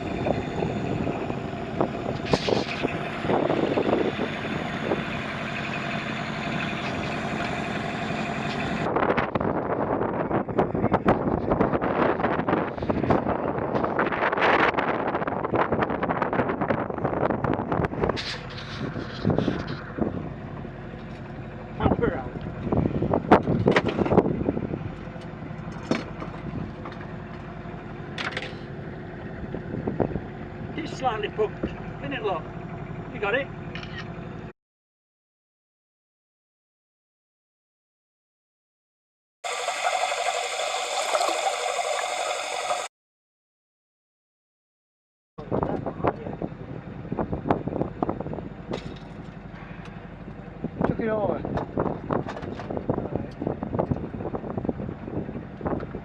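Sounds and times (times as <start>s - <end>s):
wind buffeting microphone: 0.0s - 5.2s, 8.6s - 20.4s, 21.8s - 25.1s, 45.4s - 48.7s, 50.6s - 56.0s
boat engine idling: 0.0s - 11.9s, 15.4s - 34.5s, 45.4s - 56.0s.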